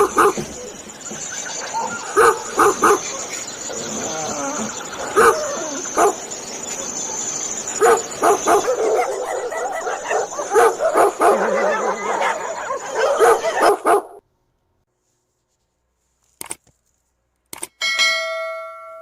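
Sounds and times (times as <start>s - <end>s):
dogs barking and yipping: 0.0s - 14.2s.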